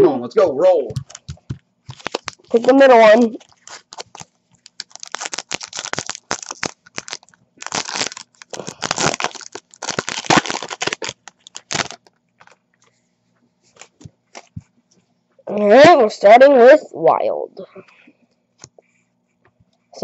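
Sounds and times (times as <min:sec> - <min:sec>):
foil wrapper tearing and crinkling: 0:01.9 - 0:12.6.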